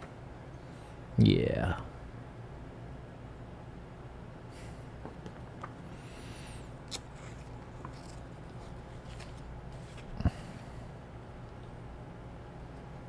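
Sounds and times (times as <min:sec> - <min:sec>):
paper cover rustling: 0:06.8 - 0:10.2.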